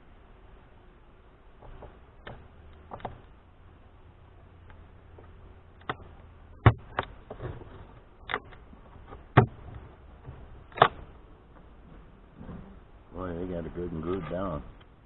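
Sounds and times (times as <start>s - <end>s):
hive tool knocking and cracking wood: 5.8s - 11.1s.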